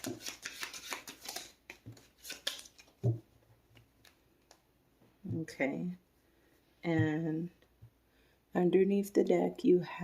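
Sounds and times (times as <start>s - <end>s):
card snaps and taps: 0.0s - 3.2s
cards being shuffled: 0.0s - 3.2s.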